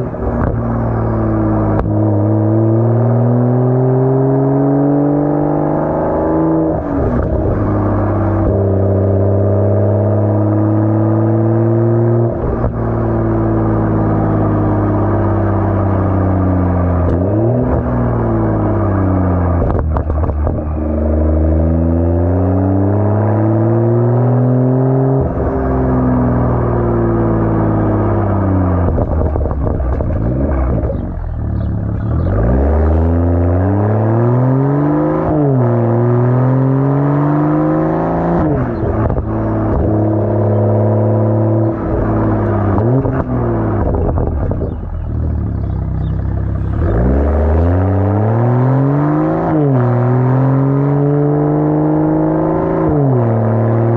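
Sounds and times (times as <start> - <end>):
car engine revving: 0.0 - 53.9
exhaust cracks: 14.8 - 21.2, 26.3 - 33.7, 38.4 - 48.7.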